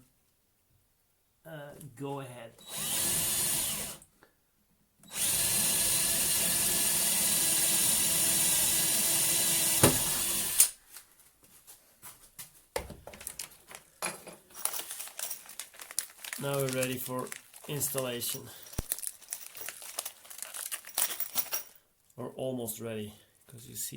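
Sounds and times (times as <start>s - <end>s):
power drill boring: 2.6s - 4.0s, 5.0s - 10.8s.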